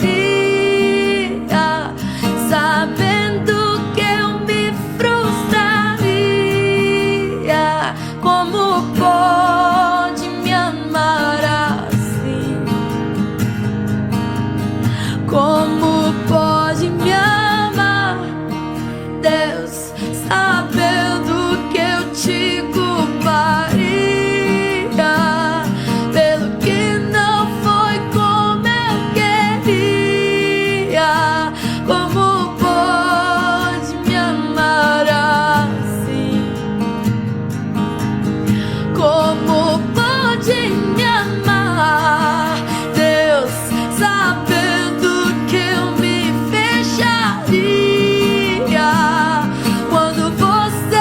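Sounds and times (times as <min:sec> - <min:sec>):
person singing slow melody: 0:00.0 - 0:13.0, 0:19.2 - 0:36.6, 0:38.9 - 0:51.0
strummed acoustic guitar: 0:00.0 - 0:51.0.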